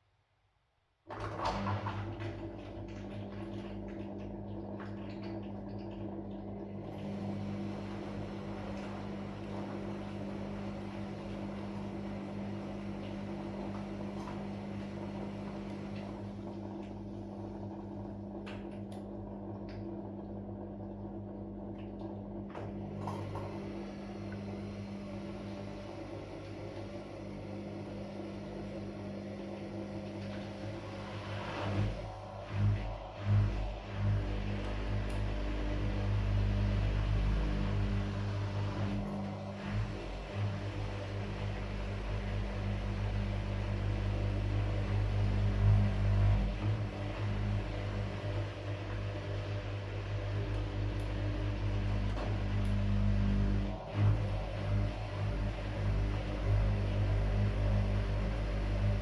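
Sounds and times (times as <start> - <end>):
washing machine motor hum: 1.1 - 59.0.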